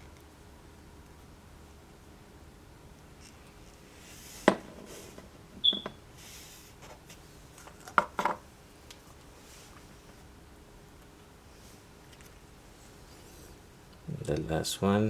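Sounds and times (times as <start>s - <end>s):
objects knocking on a table: 4.4s - 4.9s
brief squeak: 5.6s - 6.0s.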